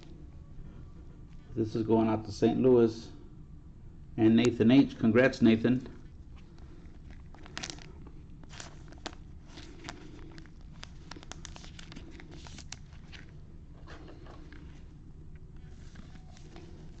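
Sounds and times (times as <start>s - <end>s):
cards and plastic packaging crinkling: 6.3s - 17.0s.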